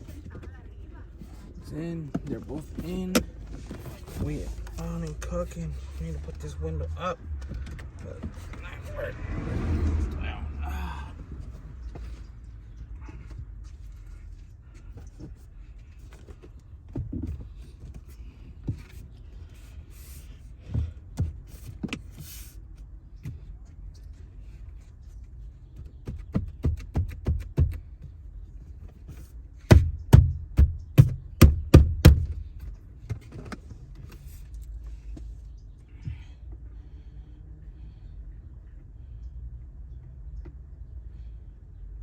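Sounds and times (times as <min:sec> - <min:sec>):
loud sharp knocks: 0:29.7 - 0:32.5.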